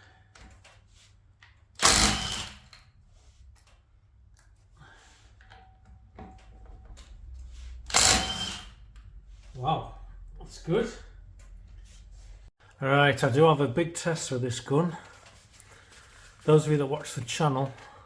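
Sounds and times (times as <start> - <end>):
impact wrench hammering: 1.8 - 2.7, 7.9 - 8.8.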